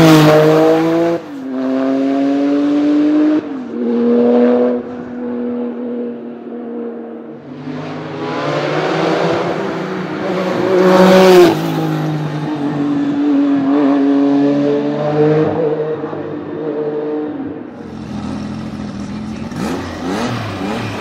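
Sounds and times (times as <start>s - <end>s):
car engine accelerating hard: 17.8s - 21.0s.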